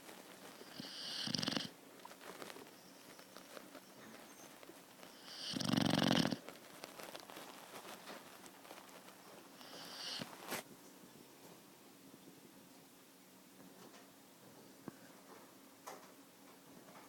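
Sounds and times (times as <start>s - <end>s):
puppy snoring: 0.6s - 1.8s, 5.0s - 6.4s, 9.6s - 10.5s.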